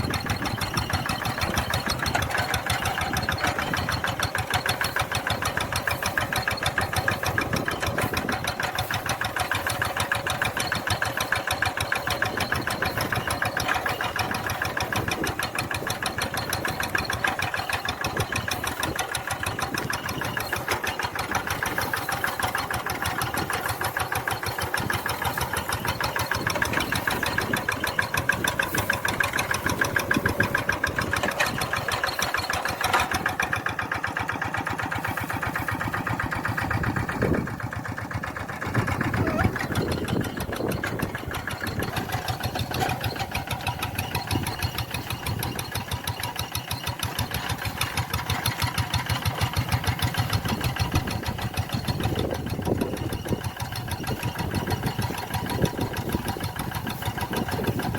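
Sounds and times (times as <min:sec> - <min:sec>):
tractor engine running: 0:00.0 - 0:57.9.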